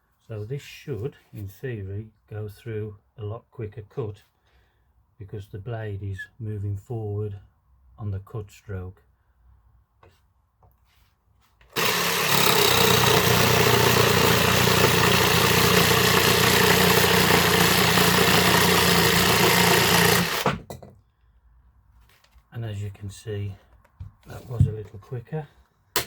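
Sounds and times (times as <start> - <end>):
jigsaw cutting wood: 11.7 - 20.7.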